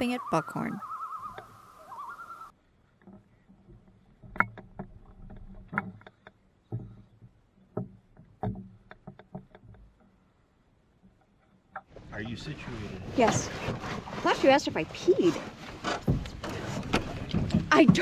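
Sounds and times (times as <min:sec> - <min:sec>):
paddle bumps: 0:11.8 - 0:18.0
knocks on canoe hull: 0:15.8 - 0:18.0.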